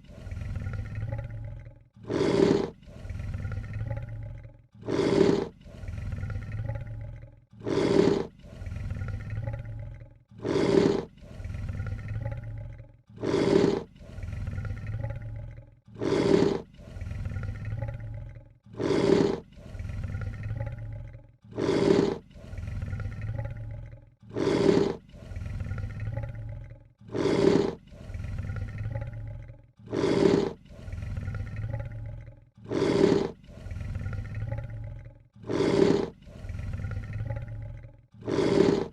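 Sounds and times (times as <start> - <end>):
lion low rumble: 0.0 - 38.9
lion hissing: 2.0 - 4.0, 4.8 - 6.8, 7.6 - 9.6, 10.4 - 12.3, 13.2 - 15.1, 15.9 - 17.9, 18.7 - 20.8, 21.5 - 23.5, 24.3 - 26.4, 27.1 - 29.2, 29.8 - 32.0, 32.6 - 34.8, 35.4 - 37.4, 38.2 - 38.9.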